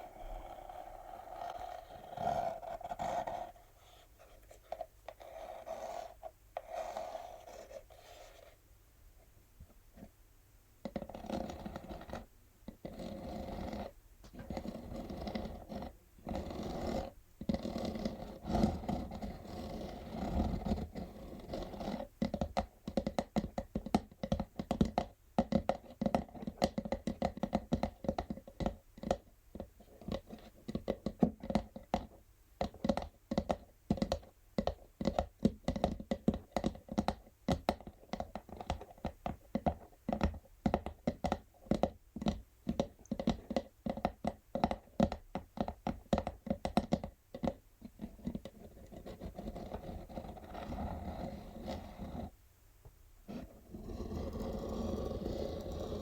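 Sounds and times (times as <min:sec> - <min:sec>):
fingernails tapping cardboard: 0:12.8 - 0:52.3, 0:53.3 - 0:56.0
fingernails scratching cardboard box: 0:53.3 - 0:56.0.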